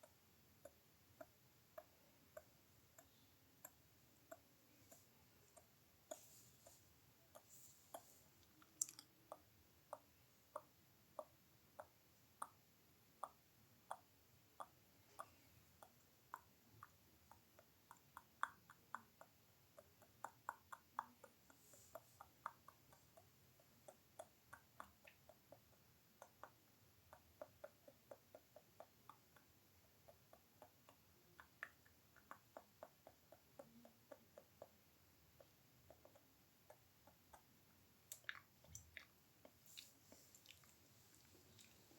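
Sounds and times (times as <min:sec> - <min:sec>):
sharp mouth clicks: 0:00.0 - 0:12.6, 0:35.4 - 0:40.8.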